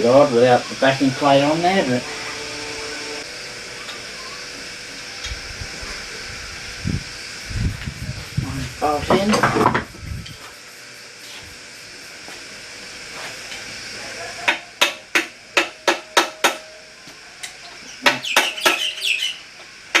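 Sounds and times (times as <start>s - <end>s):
hammer striking steel: 14.5s - 16.7s.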